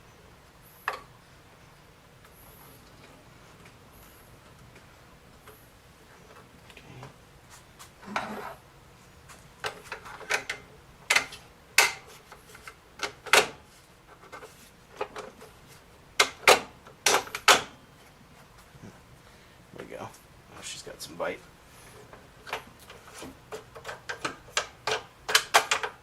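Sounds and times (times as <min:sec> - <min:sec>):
parts scraping: 0:07.5 - 0:08.6.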